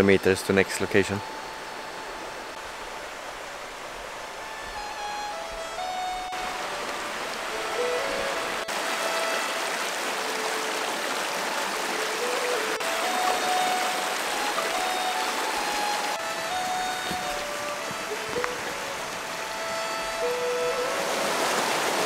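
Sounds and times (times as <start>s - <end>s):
rushing water: 0.0s - 22.0s
quiet background music: 12.0s - 21.9s.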